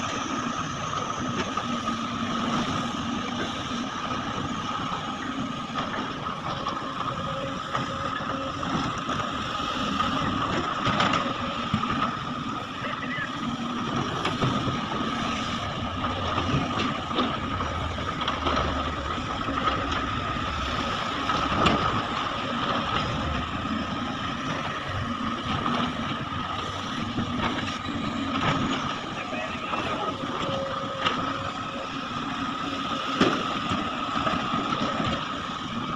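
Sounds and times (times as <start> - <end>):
excavator engine running: 0.0 - 35.9
high hydraulic whine: 0.0 - 35.9.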